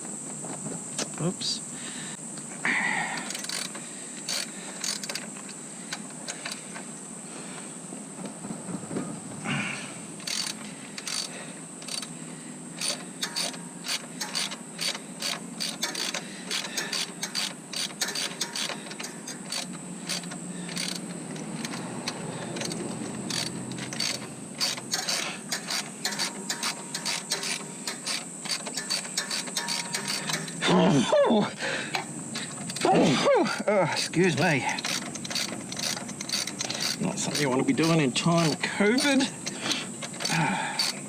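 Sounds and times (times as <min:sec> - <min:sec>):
ratchet wrench clicking: 0:03.2 - 0:06.6, 0:10.2 - 0:12.1, 0:12.8 - 0:30.6, 0:33.6 - 0:41.0.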